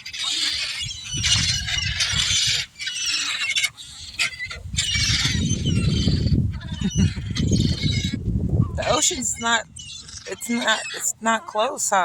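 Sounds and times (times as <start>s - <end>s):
gulls squealing and calling: 0.0s - 12.0s.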